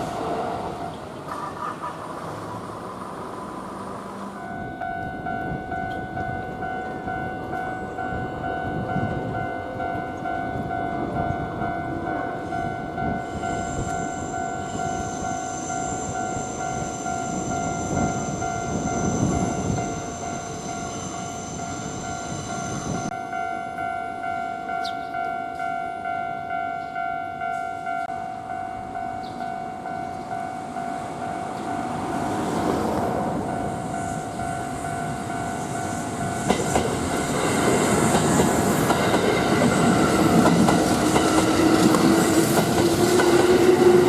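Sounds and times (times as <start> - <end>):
train wheels rumbling on rails: 0.0 - 23.2, 29.2 - 44.0
level-crossing alarm ringing: 4.3 - 44.0.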